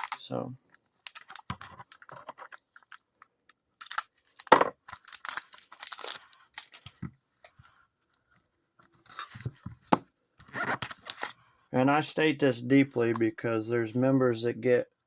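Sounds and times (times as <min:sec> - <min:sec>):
plastic wrappers crinkling: 0:00.0 - 0:07.0.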